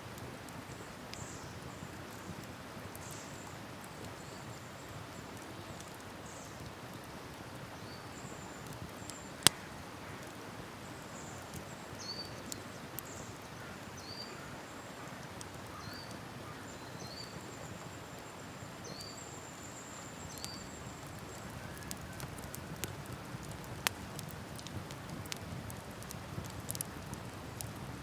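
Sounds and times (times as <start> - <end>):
campfire crackling and popping: 0.0 - 28.0.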